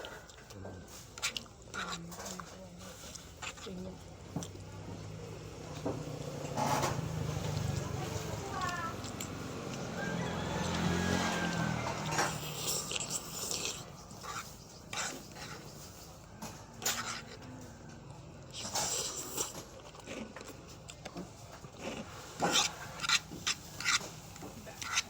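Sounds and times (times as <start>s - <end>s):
noodle slurping: 6.4s - 16.2s, 16.8s - 17.4s, 18.5s - 25.0s.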